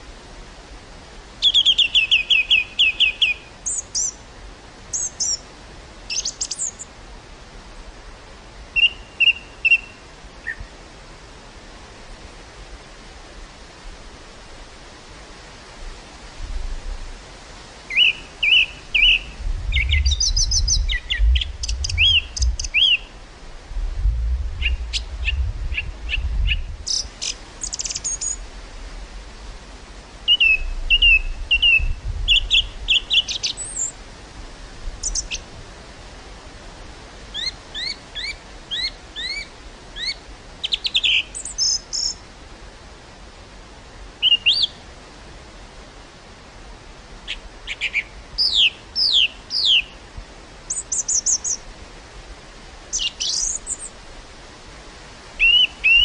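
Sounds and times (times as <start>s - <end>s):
breeze hissing through field: 0.0s - 56.0s
small birds chirping: 1.4s - 4.2s, 4.9s - 5.4s, 6.1s - 6.9s, 17.9s - 23.2s, 24.6s - 28.4s, 30.3s - 34.0s, 35.0s - 35.4s, 37.3s - 42.2s, 44.2s - 44.8s, 47.3s - 50.0s, 50.7s - 51.6s, 52.9s - 54.0s, 55.4s - 56.0s
wind rumble on microphone: 10.1s - 40.7s.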